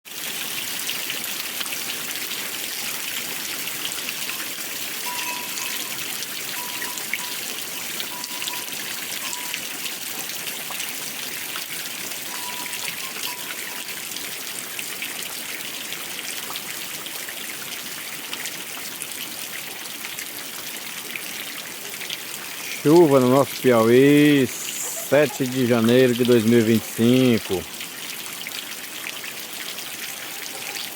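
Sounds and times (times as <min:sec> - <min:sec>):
steady rain falling: 0:00.1 - 0:30.9.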